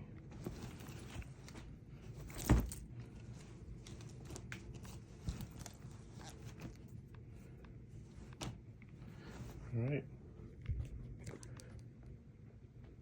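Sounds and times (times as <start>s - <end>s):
faint rustling: 0.3s - 9.8s.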